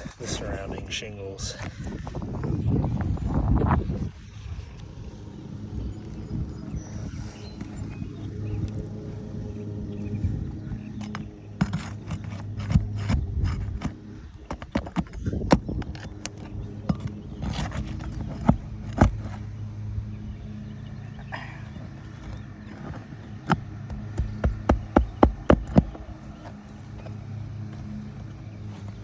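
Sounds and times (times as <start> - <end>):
pry tool on shingles: 10.6 - 19.4, 21.8 - 29.0.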